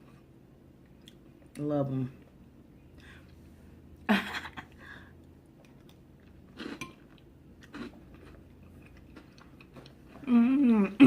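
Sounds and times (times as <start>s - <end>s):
chewing and mouth sounds: 5.6s - 10.4s.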